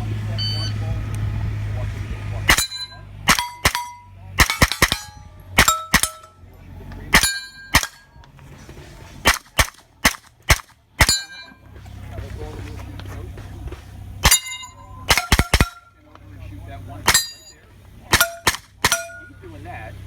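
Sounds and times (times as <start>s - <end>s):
carbine gunshots: 2.5s - 6.4s, 7.1s - 8.2s, 9.2s - 11.6s, 14.2s - 16.0s, 17.0s - 17.5s, 18.1s - 19.3s
steel plate ringing: 2.5s - 6.5s, 7.1s - 8.2s, 11.0s - 11.7s, 14.2s - 16.0s, 17.0s - 19.6s.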